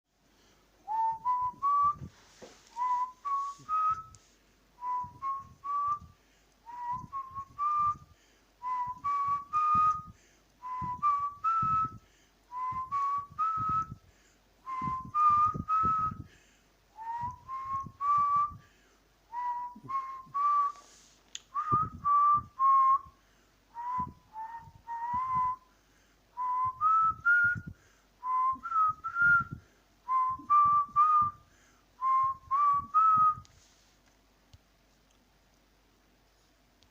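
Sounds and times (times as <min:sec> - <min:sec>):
person whistling rising notes: 0:00.9 - 0:04.2, 0:04.8 - 0:08.0, 0:08.6 - 0:14.0, 0:14.7 - 0:16.2, 0:17.0 - 0:18.6, 0:19.3 - 0:23.1, 0:23.7 - 0:25.6, 0:26.4 - 0:31.4, 0:32.0 - 0:33.5.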